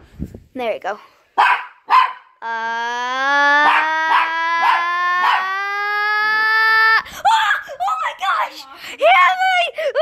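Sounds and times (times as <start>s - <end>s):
dog barking: 1.4s - 2.4s
dog howling: 3.3s - 6.2s.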